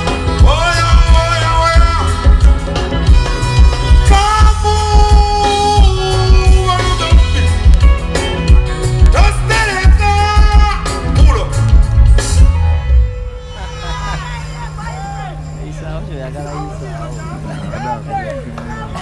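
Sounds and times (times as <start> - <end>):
bass-heavy music beat: 0.0 - 13.7.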